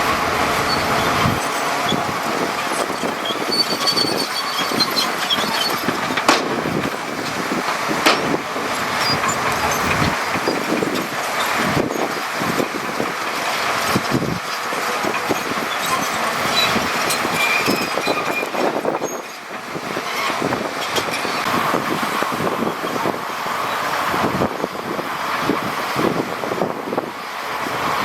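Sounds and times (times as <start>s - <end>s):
heavy diesel engines running: 0.0s - 28.0s
machinery knocks and clanks: 0.1s - 21.5s.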